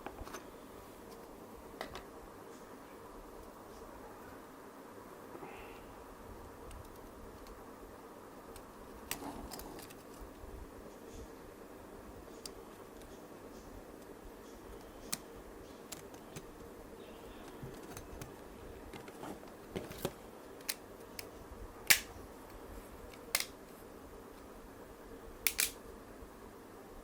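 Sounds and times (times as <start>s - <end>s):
faint steady hum: 0.0s - 27.0s
clicks and taps of tools: 25.5s - 25.8s.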